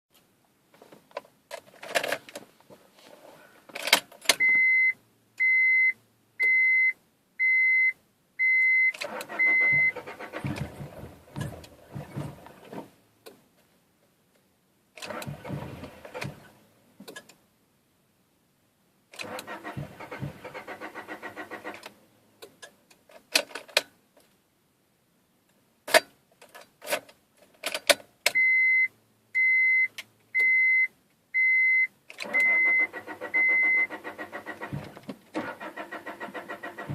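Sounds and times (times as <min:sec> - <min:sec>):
starter cranking engine: 0:09.0 - 0:12.5, 0:15.0 - 0:16.5, 0:19.2 - 0:21.9, 0:32.2 - 0:36.9
warning chime beeping: 0:09.3 - 0:10.0.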